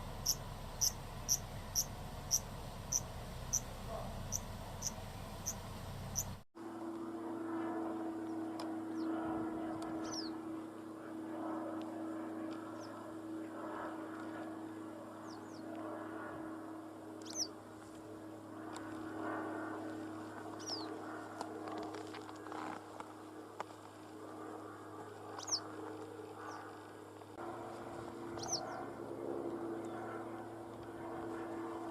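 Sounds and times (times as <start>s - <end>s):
birds whistling falling calls: 0.0s - 6.4s, 28.4s - 28.6s
cricket chirping: 0.0s - 6.4s
steady low hum: 0.0s - 31.9s.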